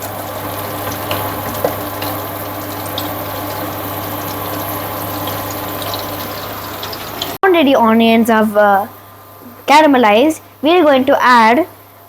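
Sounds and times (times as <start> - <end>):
onions sizzling in butter: 0.0 - 7.4.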